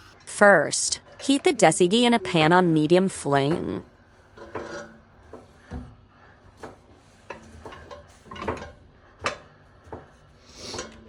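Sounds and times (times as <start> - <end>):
pan and utensils clinking: 6.6 - 11.0.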